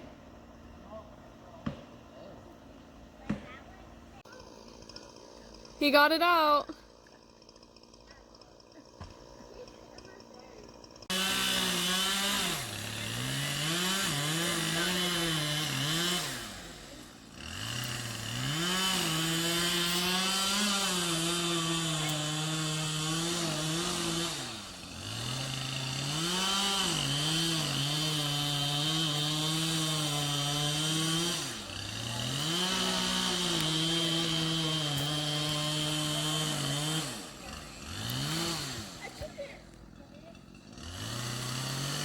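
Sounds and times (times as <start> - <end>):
chainsaw revving: 0.0 - 42.0.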